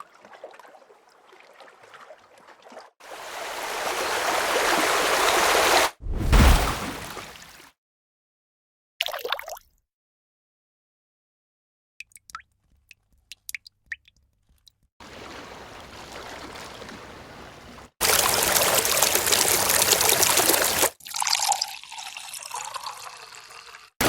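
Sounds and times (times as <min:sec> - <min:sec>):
water trickling: 0:00.0 - 0:05.1, 0:18.0 - 0:23.9
rushing water: 0:00.0 - 0:07.6, 0:15.0 - 0:21.0
water dripping: 0:12.0 - 0:14.9, 0:18.0 - 0:23.9
water gurgling: 0:18.0 - 0:21.0.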